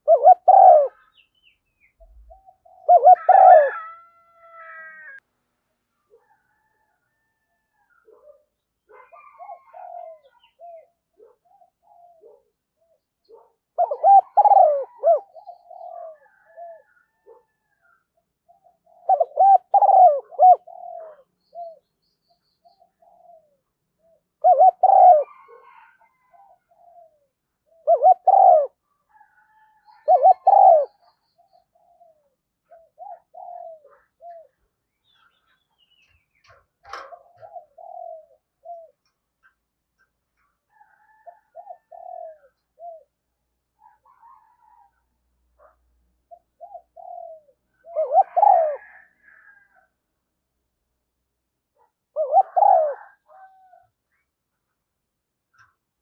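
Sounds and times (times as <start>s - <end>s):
dove cooing: 0.0s - 1.2s, 2.0s - 5.2s, 8.1s - 21.9s, 22.6s - 40.1s, 40.7s - 45.0s, 45.6s - 49.8s, 51.8s - 54.0s.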